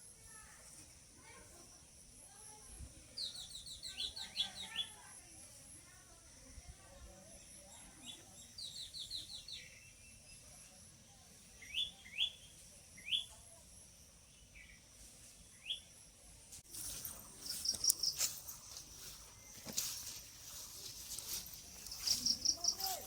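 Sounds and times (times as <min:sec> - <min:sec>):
birds chirping: 0:16.7 - 0:23.0
high insect buzz: 0:16.7 - 0:23.0.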